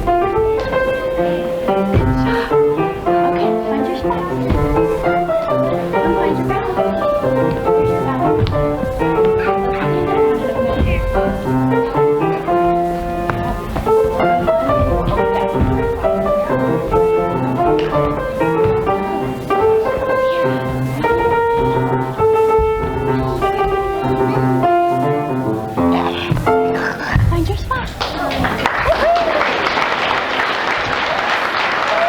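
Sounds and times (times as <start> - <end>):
bowed strings: 0.0 - 26.8
piano: 0.0 - 32.0.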